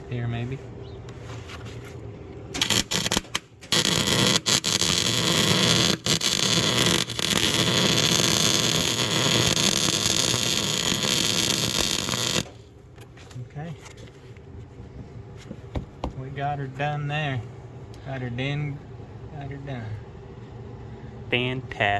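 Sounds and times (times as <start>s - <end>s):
arc welding crackling hiss: 2.6s - 12.6s.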